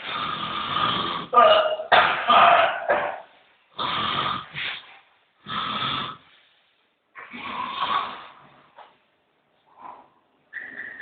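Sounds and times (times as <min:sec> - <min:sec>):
person snoring: 0:00.0 - 0:01.4, 0:03.7 - 0:04.8, 0:05.4 - 0:06.4, 0:07.2 - 0:08.4.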